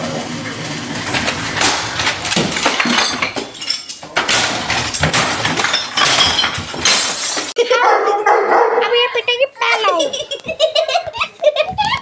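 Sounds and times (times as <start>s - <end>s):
glass shattering: 1.0s - 7.6s.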